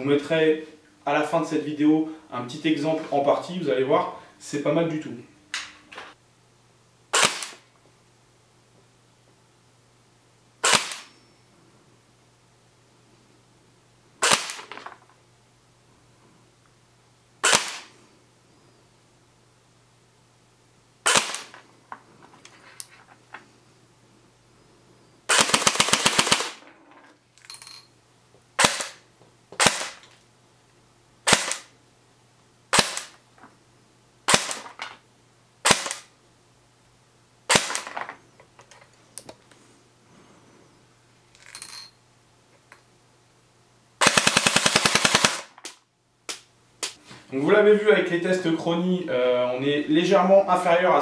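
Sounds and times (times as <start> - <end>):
airsoft rifle full-auto bursts: 7.1 - 7.6, 10.6 - 11.1, 14.2 - 14.7, 17.4 - 17.9, 21.0 - 21.5, 25.3 - 26.6, 28.6 - 29.0, 29.6 - 30.0, 31.2 - 31.7, 32.7 - 33.1, 34.3 - 34.6, 35.6 - 36.1, 37.5 - 37.8, 44.0 - 45.6
airsoft rifle single shots: 7.1 - 7.6, 10.6 - 11.1, 17.4 - 17.9, 32.7 - 33.1, 35.6 - 36.1.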